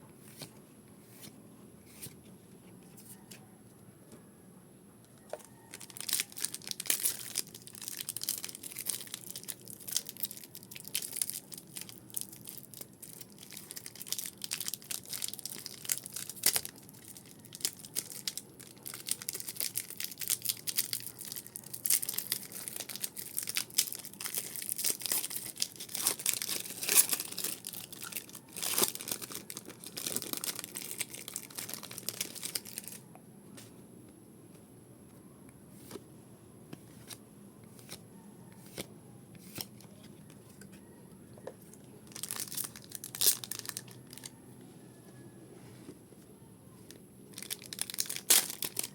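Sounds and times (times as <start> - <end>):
wrappers ripping and crinkling: 5.6 - 33.0, 42.0 - 44.3, 47.3 - 48.9.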